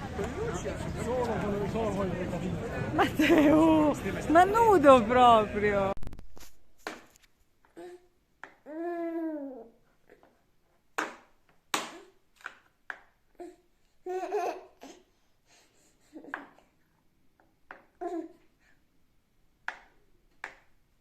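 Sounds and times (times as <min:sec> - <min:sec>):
baby laughing and giggling: 0:14.0 - 0:15.0.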